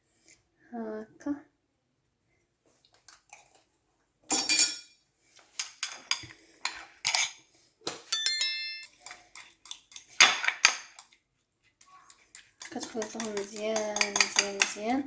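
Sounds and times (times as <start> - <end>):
metal spoon scraping a metal pot: 5.6 - 7.5, 8.1 - 11.2, 11.8 - 15.0.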